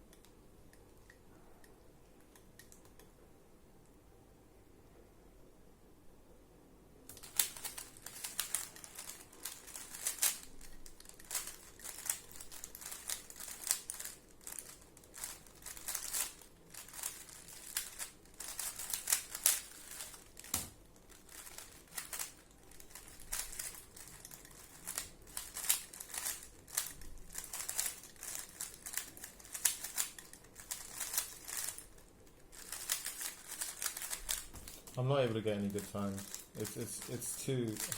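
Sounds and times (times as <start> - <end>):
puzzle cube plastic clicks: 7.1 - 35.0, 35.7 - 37.9.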